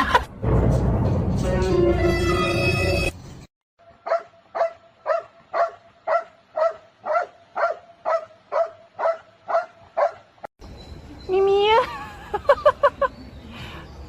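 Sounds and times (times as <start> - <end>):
dog barking: 4.0 - 10.3.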